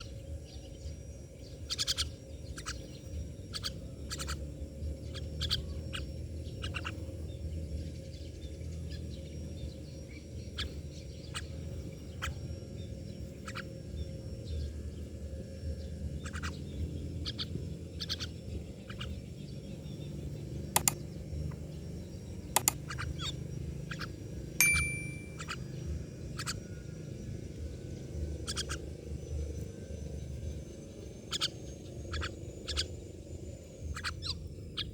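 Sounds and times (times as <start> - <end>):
bird chirps and clicks: 20.7 - 21.8, 22.5 - 25.6.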